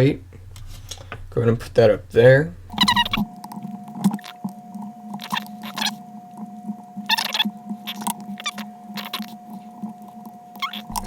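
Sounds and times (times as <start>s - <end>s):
steady electrical hum: 0.0s - 11.0s
small clicks and scratchy taps: 2.8s - 11.0s.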